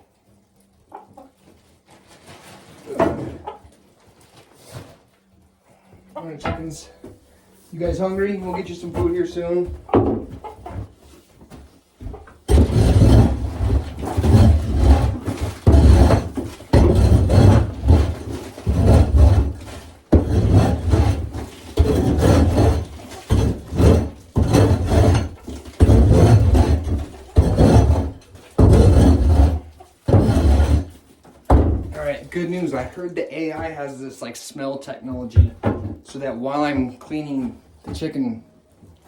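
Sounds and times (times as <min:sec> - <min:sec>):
shovel scraping coop floor: 0:01.2 - 0:05.1, 0:06.2 - 0:07.0, 0:07.6 - 0:33.9.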